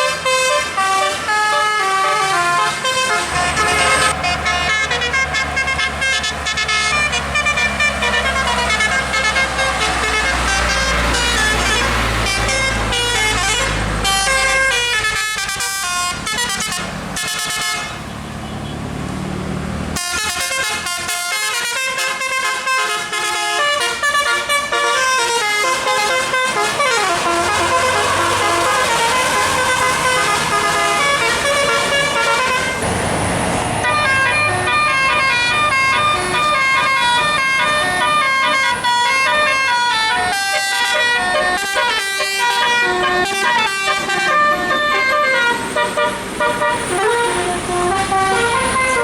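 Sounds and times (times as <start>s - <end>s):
multi-tone air horn melodies: 0.0s - 18.1s, 20.0s - 32.9s, 33.8s - 49.0s
bus engine drone: 0.0s - 49.0s.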